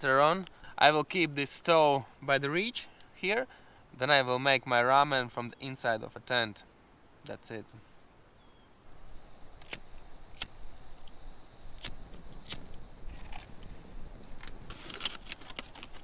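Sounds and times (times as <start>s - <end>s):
low wind rumble: 8.8s - 16.0s
foil crinkling: 14.4s - 16.0s.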